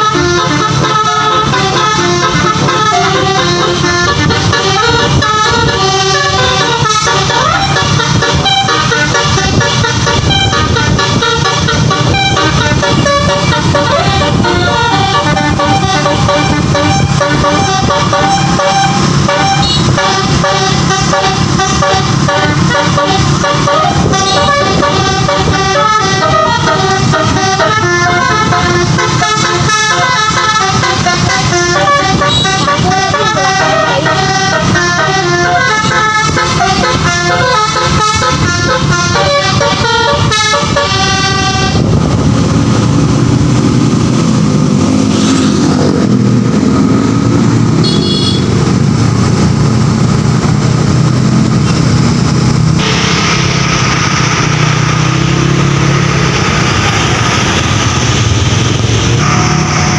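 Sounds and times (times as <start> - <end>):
multi-note air horn melody: 0.0 - 42.1, 47.8 - 48.6, 59.0 - 59.9
bus engine and road noise: 0.0 - 59.9.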